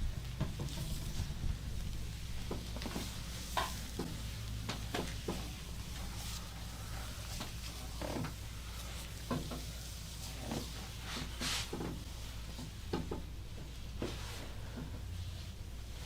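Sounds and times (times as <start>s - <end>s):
steady low hum: 0.0s - 16.0s
hands rubbing skin: 2.5s - 12.5s.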